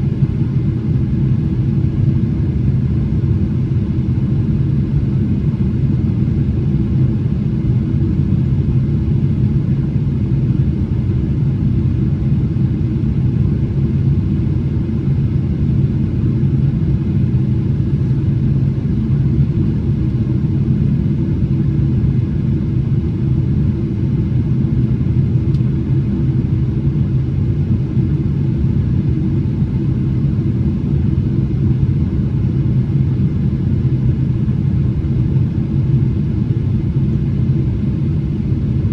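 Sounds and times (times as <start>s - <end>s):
airplane cabin engine rumble: 0.0s - 38.9s.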